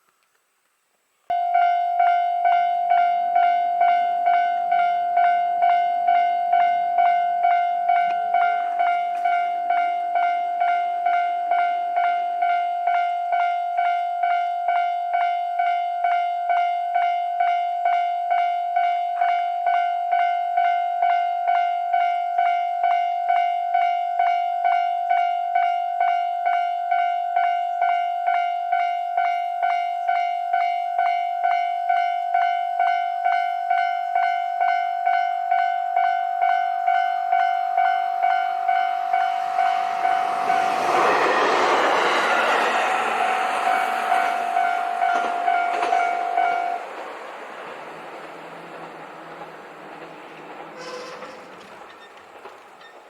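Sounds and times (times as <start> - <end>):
level crossing alarm ringing: 1.3 - 41.2, 41.9 - 48.6.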